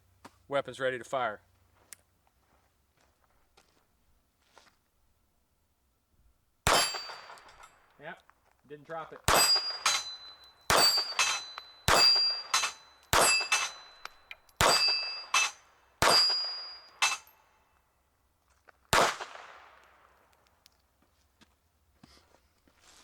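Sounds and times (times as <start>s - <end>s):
pistol shots: 6.7s - 7.6s, 9.3s - 17.3s, 18.9s - 19.9s
steel plates clanging: 9.3s - 17.4s.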